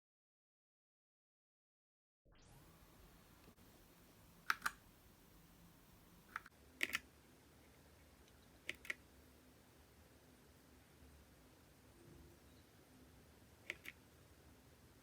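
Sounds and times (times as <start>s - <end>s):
mechanical keyboard clicks: 4.5s - 4.8s, 6.3s - 7.0s, 8.6s - 9.0s, 13.7s - 14.0s.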